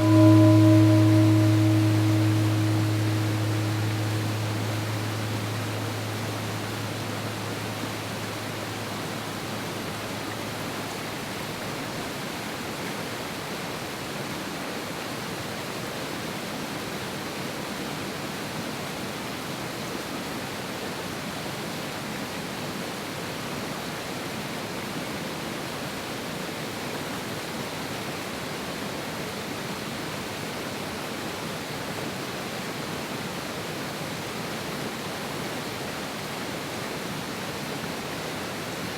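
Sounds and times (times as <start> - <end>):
low held tone: 0.0 - 10.9.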